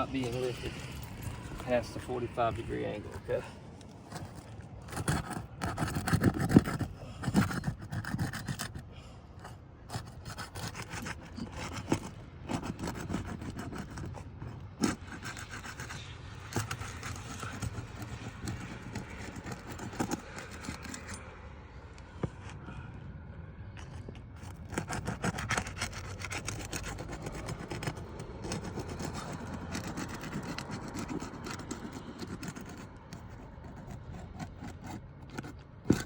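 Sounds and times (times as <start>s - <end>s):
scraping of roof shingles: 23.8s - 36.0s.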